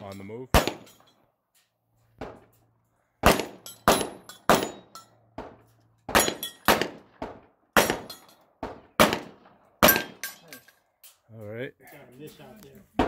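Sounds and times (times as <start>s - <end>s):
pistol shots: 0.5s - 1.0s, 3.2s - 10.3s.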